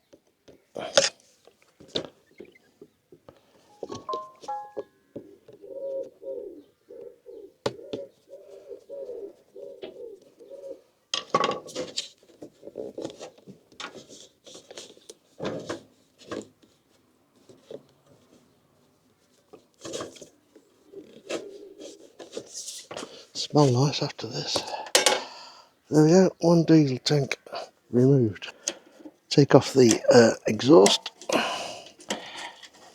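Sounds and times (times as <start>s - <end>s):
bird cooing: 5.3s - 11.0s, 20.7s - 22.4s.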